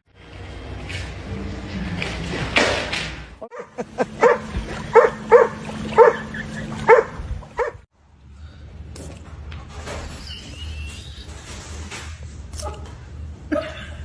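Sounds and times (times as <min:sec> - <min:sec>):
dog barking: 0:03.5 - 0:07.8.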